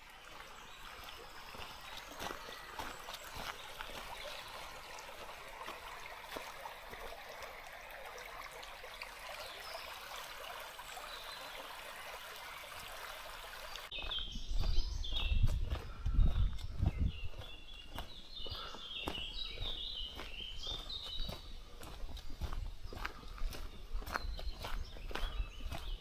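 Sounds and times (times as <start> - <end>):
forest stream babbling: 0.0 - 14.2.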